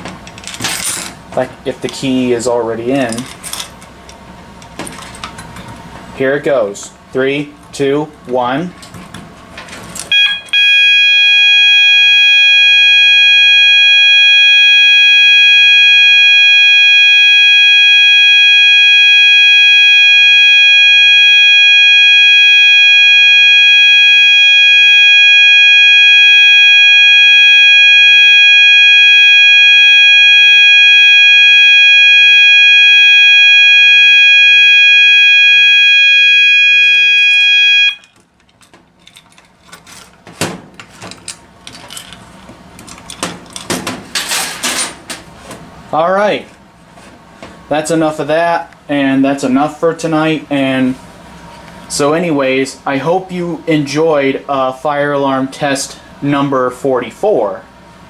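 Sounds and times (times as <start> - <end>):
high-pitched alarm tone: 10.1 - 38.2.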